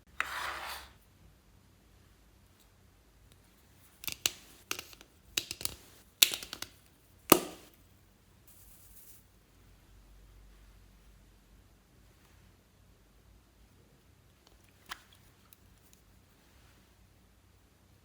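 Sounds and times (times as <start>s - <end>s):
slime crackling and popping: 4.0s - 7.7s.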